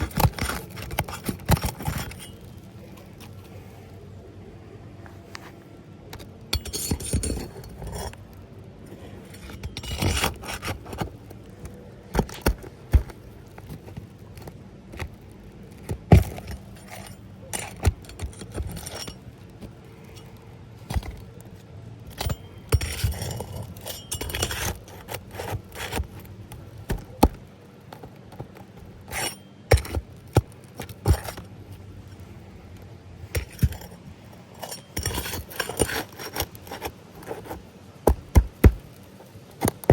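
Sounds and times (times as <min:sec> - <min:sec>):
tools knocking and scraping on shingles: 0:00.0 - 0:03.4, 0:06.1 - 0:08.3, 0:08.9 - 0:31.5, 0:33.2 - 0:39.9.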